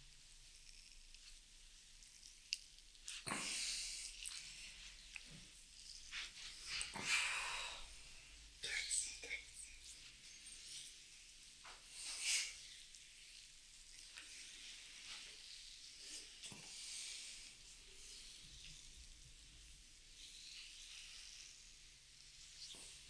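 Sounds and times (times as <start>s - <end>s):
hands rubbing over skin: 4.1s - 7.0s.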